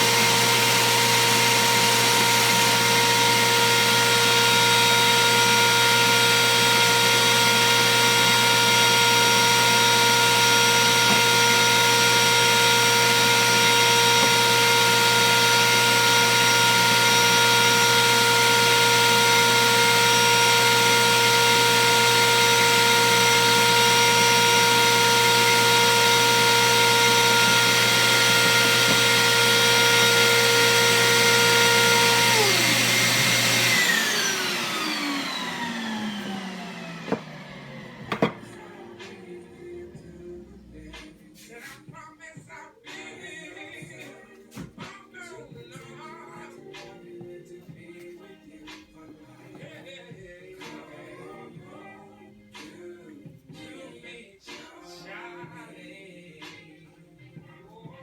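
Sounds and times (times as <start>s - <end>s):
router whining: 0.0s - 40.0s.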